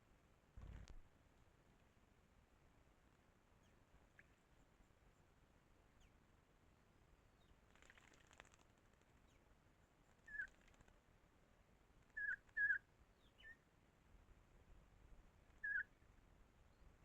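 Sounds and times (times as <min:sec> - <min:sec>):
bird chirping: 0:09.2 - 0:10.8, 0:12.1 - 0:13.6, 0:15.5 - 0:16.0.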